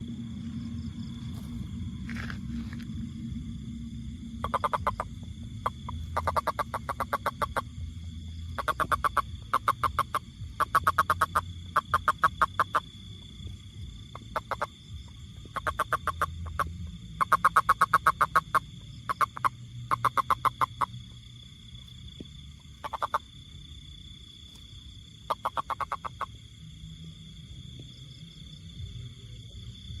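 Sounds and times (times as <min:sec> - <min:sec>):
toad trilling: 0:04.4 - 0:13.0, 0:14.1 - 0:14.7, 0:15.4 - 0:21.2, 0:22.6 - 0:23.4, 0:25.2 - 0:26.4.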